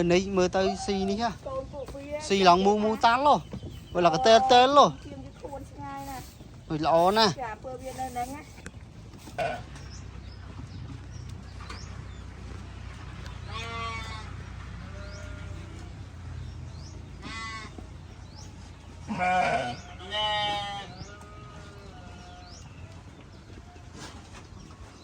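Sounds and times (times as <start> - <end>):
sheep bleating: 9.3 - 9.7, 13.4 - 16.0, 17.2 - 17.8, 19.0 - 22.7.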